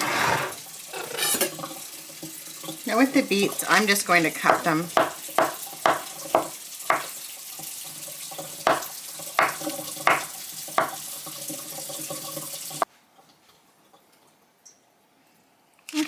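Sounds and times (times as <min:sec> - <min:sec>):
knife chopping on cutting board: 0:04.5 - 0:07.1, 0:08.6 - 0:11.0.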